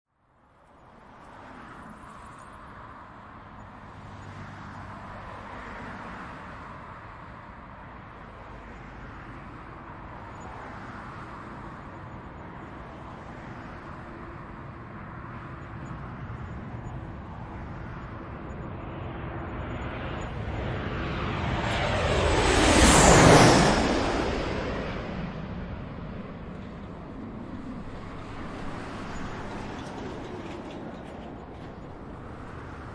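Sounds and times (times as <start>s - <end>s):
jet airliner engine noise: 0.8s - 32.9s.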